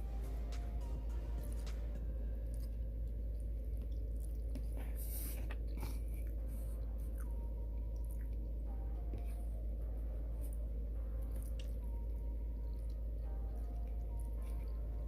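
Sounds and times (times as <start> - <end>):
steady low hum: 0.0 - 15.0
person chewing food: 2.4 - 8.5, 10.4 - 15.0.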